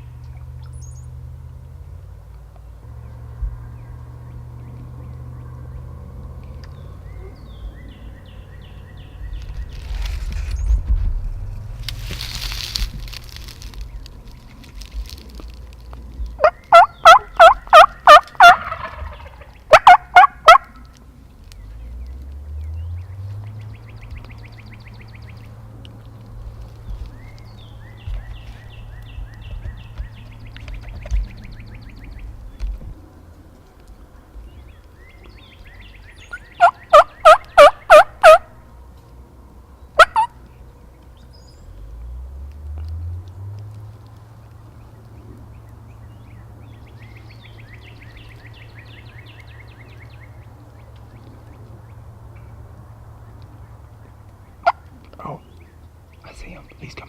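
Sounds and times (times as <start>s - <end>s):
turkey call yelps: 16.4s - 20.9s, 36.2s - 38.6s, 40.0s - 40.4s, 54.6s - 54.9s.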